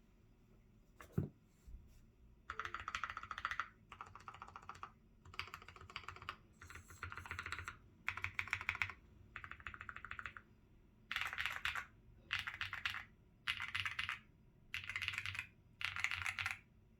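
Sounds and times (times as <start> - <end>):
clacky keyboard typing: 2.5 - 10.4, 11.1 - 16.6.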